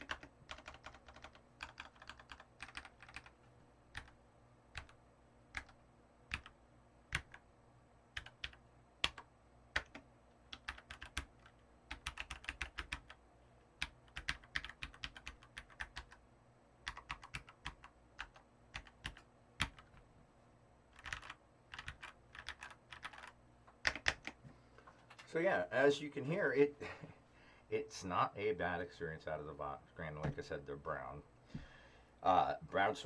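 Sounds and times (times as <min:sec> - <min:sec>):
mechanical keyboard typing: 0:00.0 - 0:06.5, 0:07.1 - 0:07.4, 0:08.2 - 0:13.2, 0:13.8 - 0:16.2, 0:16.8 - 0:20.0, 0:20.9 - 0:24.4.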